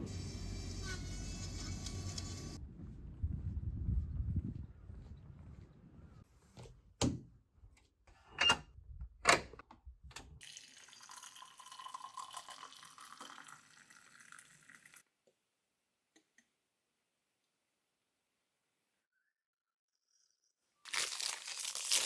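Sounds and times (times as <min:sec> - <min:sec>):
water running from kitchen tap: 0:10.4 - 0:15.0.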